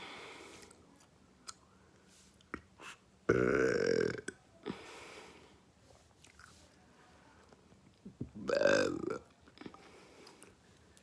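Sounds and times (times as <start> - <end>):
person burping: 3.3 - 4.4, 8.4 - 9.3.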